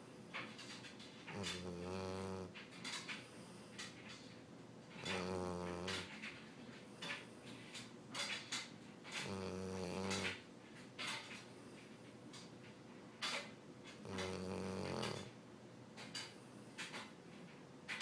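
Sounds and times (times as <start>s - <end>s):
dog snoring: 0.5s - 4.2s, 4.9s - 6.4s, 7.8s - 10.4s, 13.3s - 15.4s.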